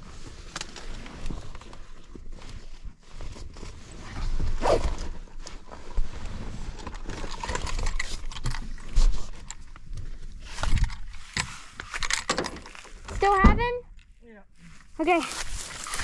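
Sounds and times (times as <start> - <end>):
gear knocking and rustling: 5.5 - 13.4, 15.0 - 16.0
footsteps on rough ground: 14.8 - 16.0.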